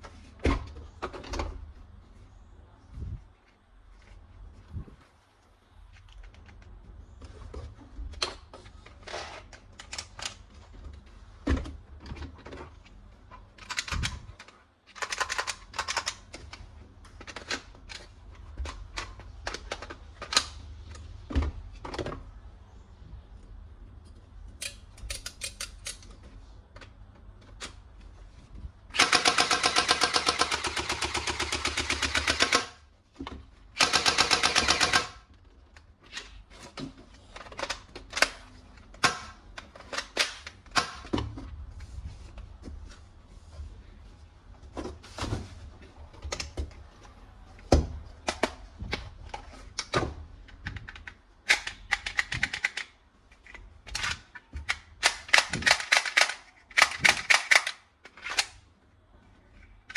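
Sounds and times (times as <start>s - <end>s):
toy gun rapid rattling fire: 28.9s - 32.7s, 33.8s - 35.2s, 55.1s - 57.8s
toy gun clicks and knocks: 50.8s - 53.0s, 53.9s - 58.6s.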